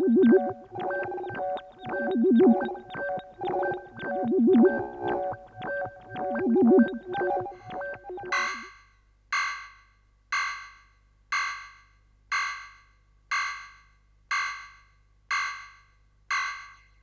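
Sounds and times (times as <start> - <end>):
held synth tones: 0.0 - 8.7
warbling low synth tone: 0.0 - 8.7
short electronic beeps: 6.6 - 8.8.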